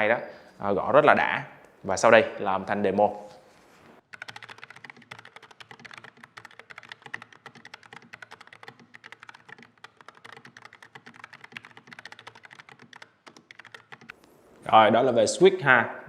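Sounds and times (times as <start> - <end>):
fast keyboard typing: 4.0 - 14.1.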